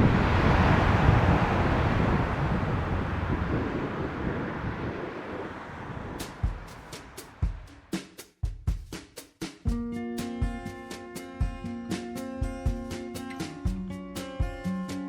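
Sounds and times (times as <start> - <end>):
wind buffeting microphone: 0.0 - 7.7
drum beat: 6.1 - 14.7.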